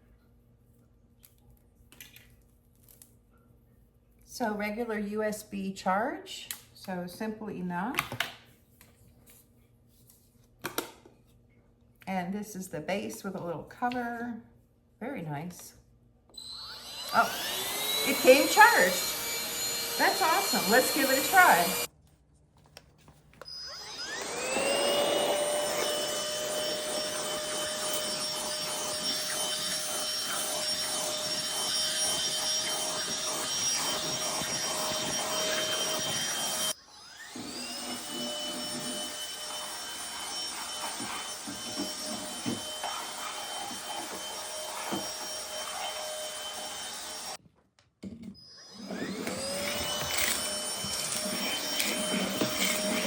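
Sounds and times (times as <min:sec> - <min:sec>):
handheld vacuum motor whining: 0:16.3 - 0:21.9, 0:23.4 - 0:47.4, 0:48.4 - 0:53.0.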